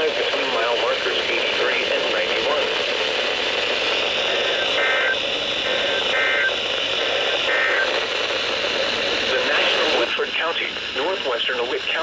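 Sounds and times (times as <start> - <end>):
radio static hiss: 0.0 - 12.0
digital data tone bursts: 4.3 - 8.0.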